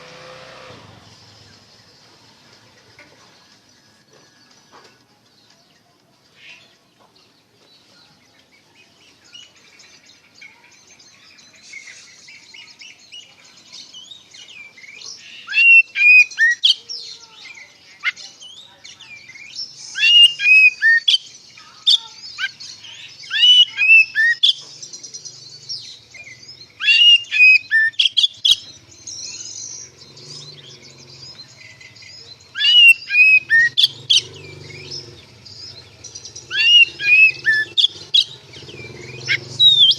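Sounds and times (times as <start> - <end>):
faint bird twitter: 0.9 - 39.9
bird singing whistled phrases: 13.9 - 17.1, 18.0 - 25.3, 26.2 - 29.9, 30.5 - 39.9.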